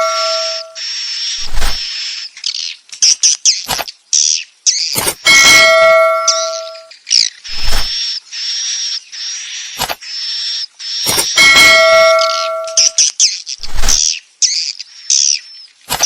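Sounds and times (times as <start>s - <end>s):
bell-like ringing tone: 0.0s - 0.8s, 5.1s - 6.9s, 7.5s - 7.9s, 11.1s - 13.0s
swiftlet chirps and twitters: 0.0s - 2.0s, 4.8s - 6.9s, 10.4s - 14.2s.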